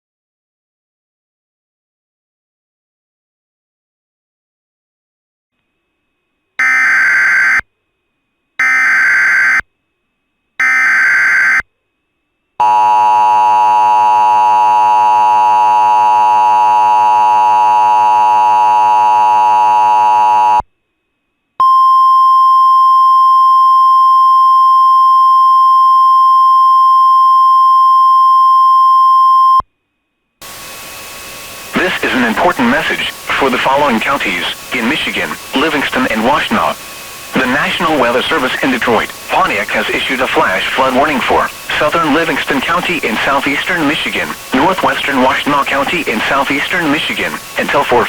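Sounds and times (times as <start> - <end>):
data tone bursts: 6.6 - 7.6, 8.6 - 9.6, 10.6 - 11.6, 31.8 - 48.0
two-tone attention signal: 6.6 - 7.6, 8.6 - 9.6, 10.6 - 11.6.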